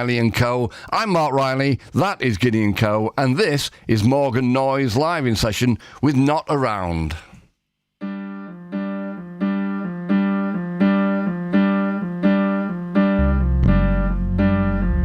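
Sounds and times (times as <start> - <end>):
keyboard striking chord: 8.0 - 15.0
low bass notes: 13.2 - 15.0.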